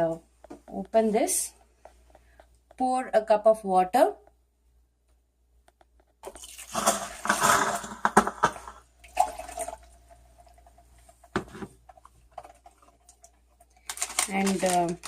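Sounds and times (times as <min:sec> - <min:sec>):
water pouring and splashing: 0:06.2 - 0:11.3, 0:11.9 - 0:14.9.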